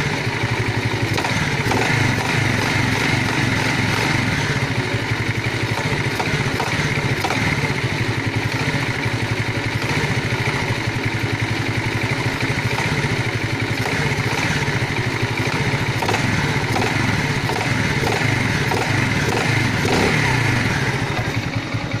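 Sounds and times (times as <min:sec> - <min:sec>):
moped engine running: 0:00.0 - 0:22.0
sharp engine ticks: 0:01.0 - 0:04.6, 0:05.5 - 0:07.8, 0:12.4 - 0:21.5.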